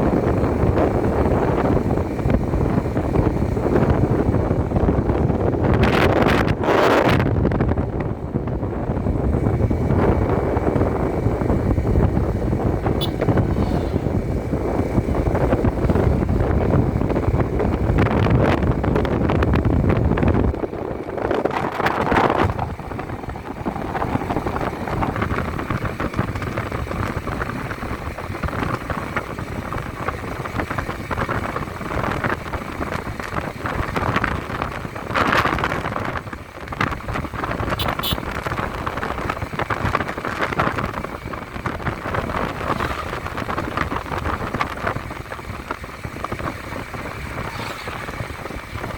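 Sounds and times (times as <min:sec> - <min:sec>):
vehicle running noise: 0:00.0 - 0:48.9
wind buffeting microphone: 0:00.0 - 0:48.9.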